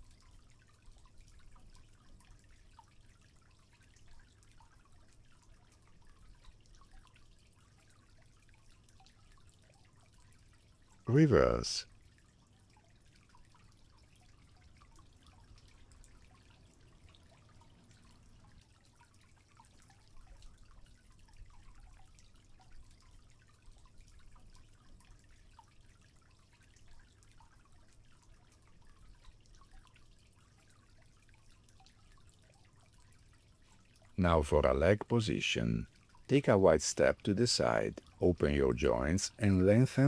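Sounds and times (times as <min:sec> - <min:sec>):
water trickling and dripping: 0:00.0 - 0:11.1, 0:11.9 - 0:36.3
low steady hum: 0:34.2 - 0:40.0.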